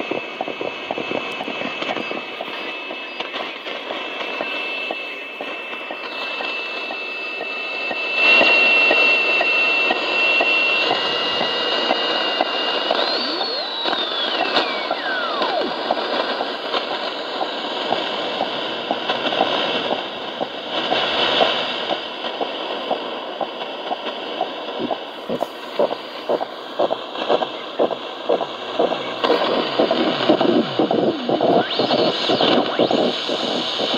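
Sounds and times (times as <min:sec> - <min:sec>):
radio hiss with crackling static: 0:00.0 - 0:33.9
high heterodyne whistle: 0:12.8 - 0:15.9.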